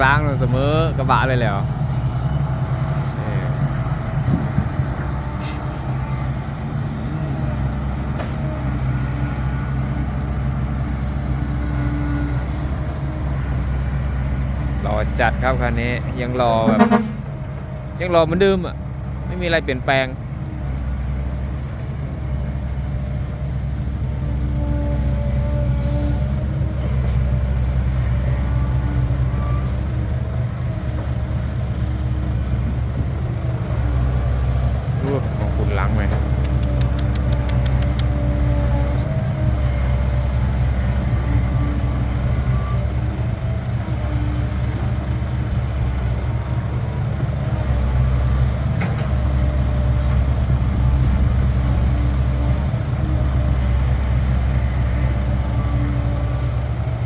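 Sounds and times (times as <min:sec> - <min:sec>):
diesel engine idling: 0:00.0 - 0:57.0
faint shifting tones: 0:00.0 - 0:57.0.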